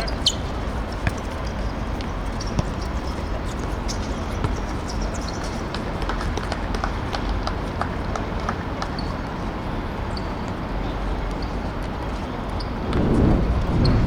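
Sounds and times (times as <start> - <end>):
steady outdoor rumble: 12.6 - 14.0.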